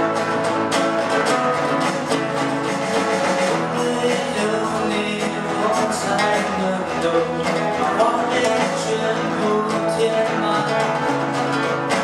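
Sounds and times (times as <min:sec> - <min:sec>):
band playing: 0:00.0 - 0:12.0
guitar: 0:00.0 - 0:12.0
steady percussion: 0:00.0 - 0:12.0.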